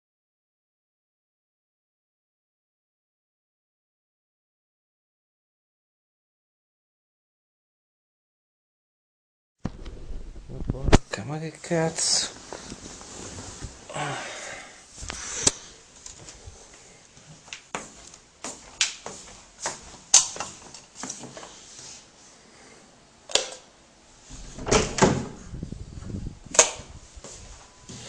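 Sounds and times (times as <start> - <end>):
thumps and rustling: 12.4 - 13.9.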